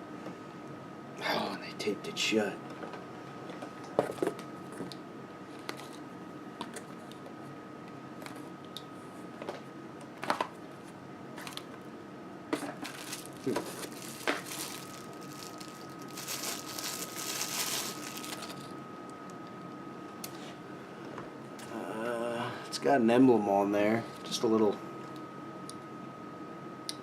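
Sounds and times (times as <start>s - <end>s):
packaging crinkling: 12.6s - 18.7s.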